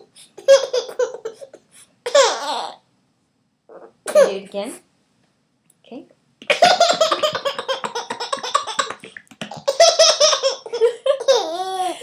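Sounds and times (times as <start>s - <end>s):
baby laughing: 0.0s - 2.8s, 6.4s - 12.0s.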